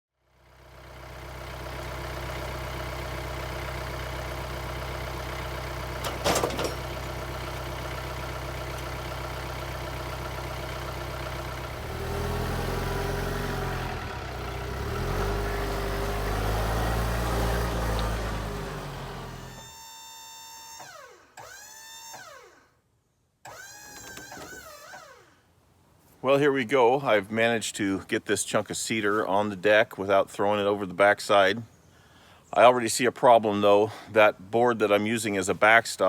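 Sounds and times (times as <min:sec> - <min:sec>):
engine idling: 0:00.2 - 0:19.7.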